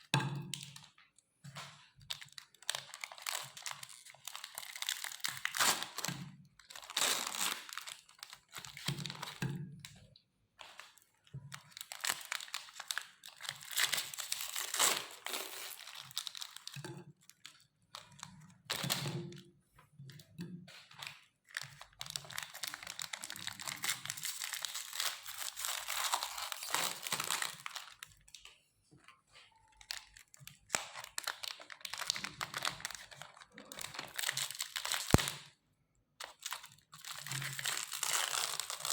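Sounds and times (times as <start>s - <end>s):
biscuits crunching in a grinder: 2.1s - 9.1s, 11.6s - 18.8s, 21.4s - 28.3s, 29.9s - 35.5s, 36.3s - 38.9s.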